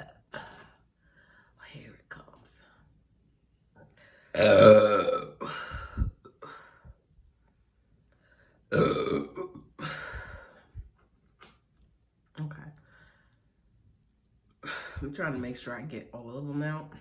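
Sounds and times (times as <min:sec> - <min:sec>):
woman burping loudly: 0:04.4 - 0:06.6, 0:08.7 - 0:10.2.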